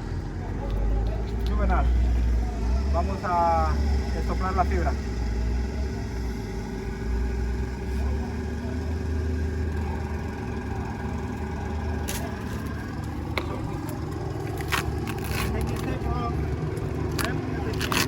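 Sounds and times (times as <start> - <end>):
air compressor engine running: 7.7 - 18.0.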